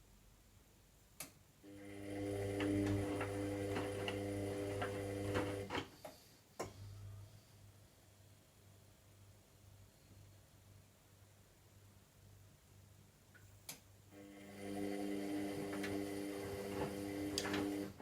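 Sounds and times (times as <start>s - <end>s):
faint low hum: 0.0s - 17.9s
click: 1.2s - 1.4s, 13.3s - 13.8s
washing machine motor humming: 1.7s - 5.9s, 14.2s - 18.0s.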